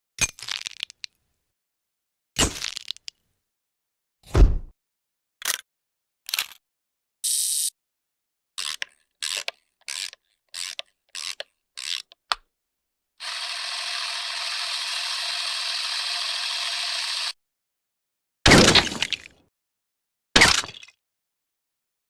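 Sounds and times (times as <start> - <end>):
camera mechanism whirring: 8.6 - 12.2, 13.2 - 17.4
camera wind-up ratcheting clicks: 8.6 - 12.2, 13.2 - 17.4.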